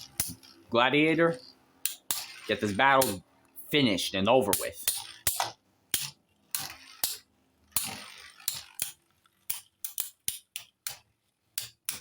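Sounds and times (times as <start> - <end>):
spinning tops grinding scrapes: 0.0 - 3.6, 4.5 - 11.0
spinning tops clicking: 0.0 - 3.7, 4.4 - 12.0.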